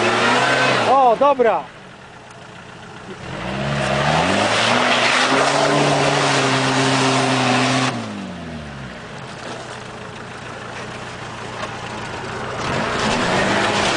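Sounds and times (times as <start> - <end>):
engine revving: 0.0 - 1.2, 3.0 - 8.9, 12.5 - 13.9.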